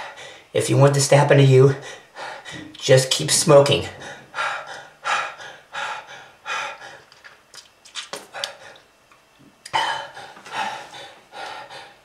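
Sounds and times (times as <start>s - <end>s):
person gasping for breath: 9.7s - 12.0s.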